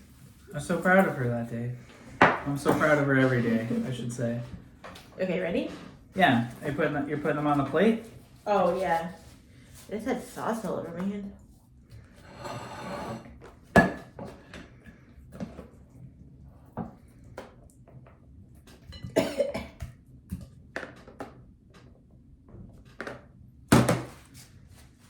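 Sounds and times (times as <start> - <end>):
dishes tapping and clinking: 2.2 - 3.4, 13.8 - 14.4.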